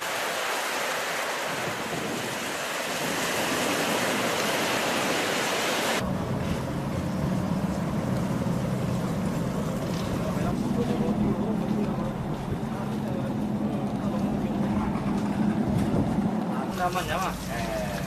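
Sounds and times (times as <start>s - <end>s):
waves breaking: 0.0s - 18.0s
low engine hum: 6.0s - 18.0s.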